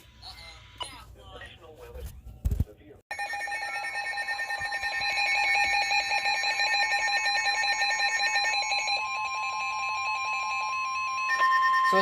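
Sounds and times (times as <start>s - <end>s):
steady alarm tone: 3.1s - 12.0s.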